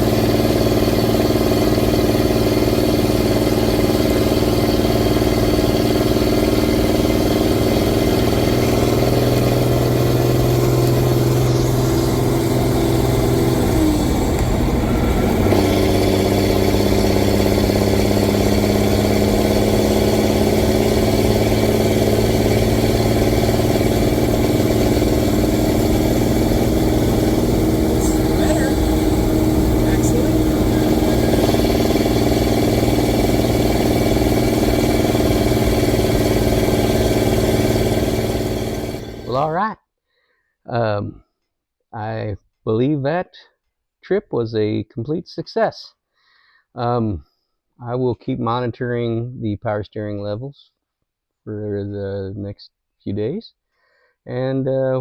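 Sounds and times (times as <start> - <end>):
diesel truck engine running: 0.0 - 39.6.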